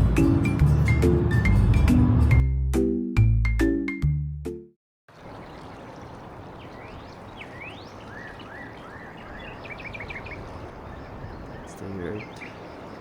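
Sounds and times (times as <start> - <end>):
creek rushing: 5.1 - 13.0
bird whistling and chirping: 6.6 - 13.0.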